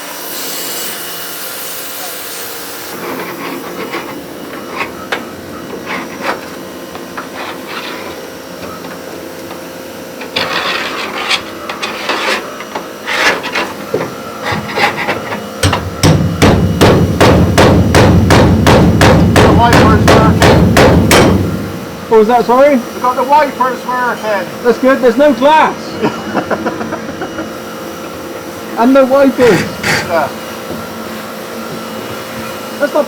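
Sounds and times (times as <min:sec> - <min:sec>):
scraping and tapping: 0:02.9 - 0:16.2, 0:29.4 - 0:30.8.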